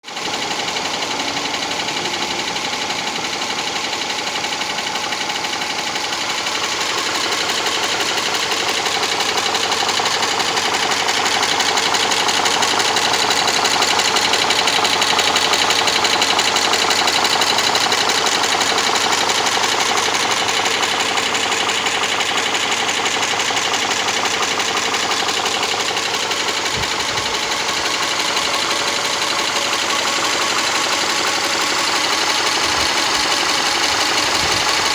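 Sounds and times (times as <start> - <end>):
car engine running with ticking: 0.0 - 34.9.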